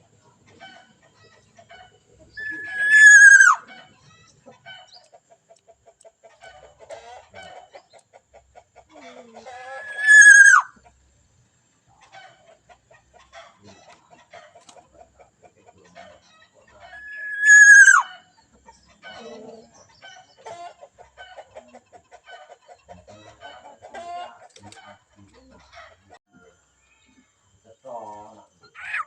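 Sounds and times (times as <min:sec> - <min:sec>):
faint clucking: 0:00.0 - 0:10.0, 0:11.8 - 0:26.5
loud bird call: 0:02.3 - 0:03.9, 0:09.5 - 0:10.8, 0:16.8 - 0:18.3, 0:28.6 - 0:29.0.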